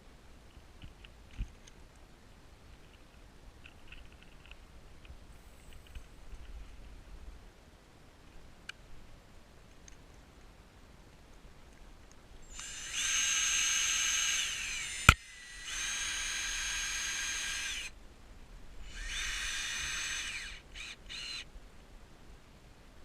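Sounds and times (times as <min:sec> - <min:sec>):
power drill driving screws: 0:12.5 - 0:17.9, 0:18.8 - 0:21.4.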